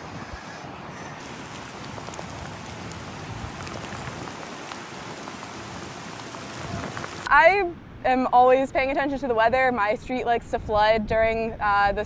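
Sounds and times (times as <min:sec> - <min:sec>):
raindrops ticking close: 0:01.2 - 0:07.3
steady rain falling: 0:01.2 - 0:07.3.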